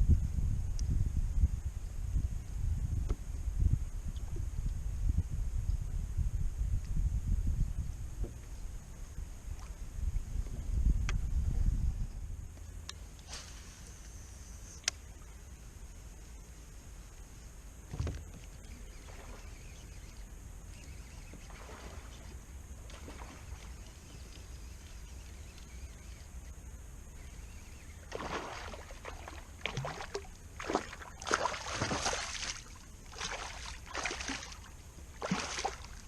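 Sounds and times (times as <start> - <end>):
water splashing around kayak: 21.2 - 24.6, 28.0 - 36.0.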